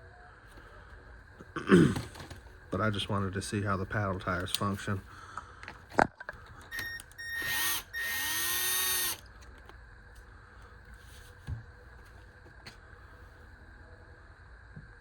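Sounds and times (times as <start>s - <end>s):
cordless driver whirring: 6.7s - 9.7s.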